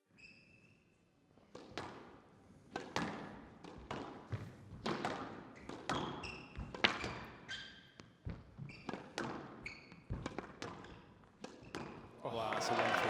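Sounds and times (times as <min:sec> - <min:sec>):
squash ball hitting rackets and walls: 0:01.6 - 0:12.1
shoes squeaking on court floor: 0:05.6 - 0:12.1.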